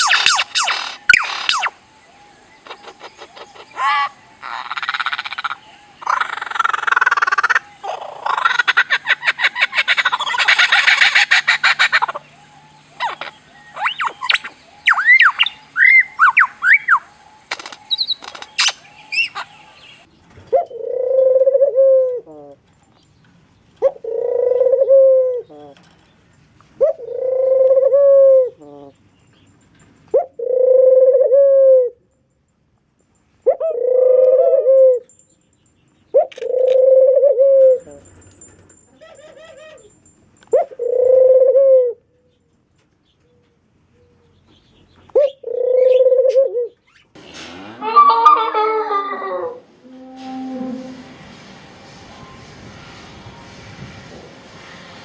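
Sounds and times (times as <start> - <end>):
rapid rattling animal call: 0.0 - 1.8, 2.6 - 21.6
long drawn-out animal call: 47.2 - 51.2.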